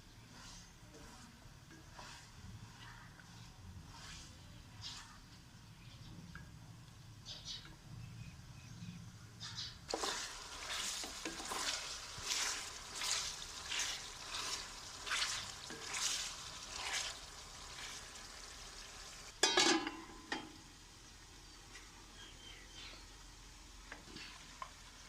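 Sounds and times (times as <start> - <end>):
spoon scraping a pan: 0.1 - 5.4, 9.9 - 20.5
food sizzling in a pan: 0.3 - 5.2, 9.9 - 19.5.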